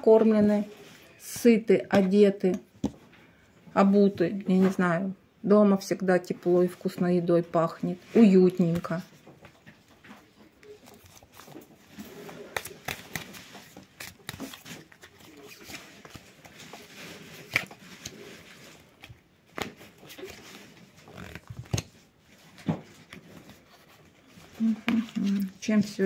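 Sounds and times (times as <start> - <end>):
cards being shuffled: 8.2 - 26.0.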